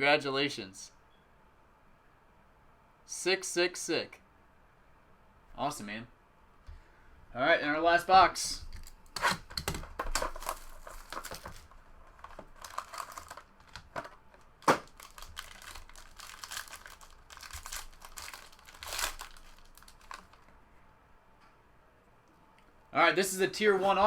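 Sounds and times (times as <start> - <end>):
packaging crinkling and tearing: 8.8 - 20.5.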